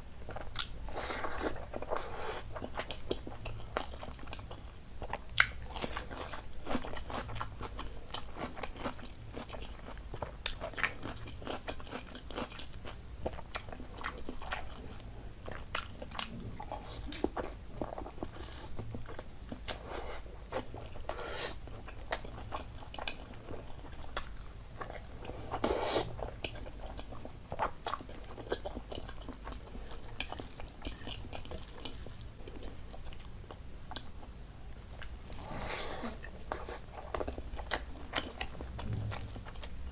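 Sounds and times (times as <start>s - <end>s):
faint low hum: 0.0s - 39.9s
person chewing and biting: 5.0s - 33.2s.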